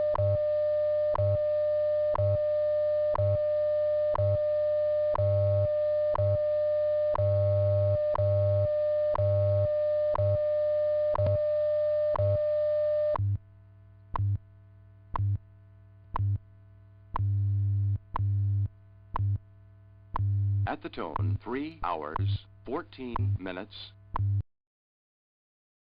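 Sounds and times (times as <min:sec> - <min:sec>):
low humming time code pulses: 0:00.0 - 0:24.4
ticks: 0:11.1 - 0:11.4, 0:14.1 - 0:14.4, 0:15.1 - 0:15.4, 0:16.1 - 0:16.4, 0:17.1 - 0:18.4, 0:19.1 - 0:19.4, 0:20.1 - 0:20.4
steady radio tone: 0:20.7 - 0:24.0.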